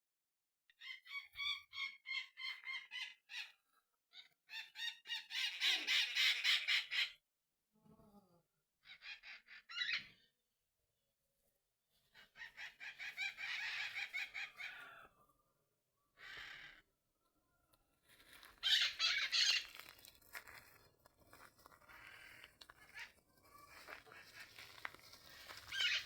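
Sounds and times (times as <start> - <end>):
bird calls: 12.2 - 15.1, 18.5 - 19.9, 21.9 - 26.0.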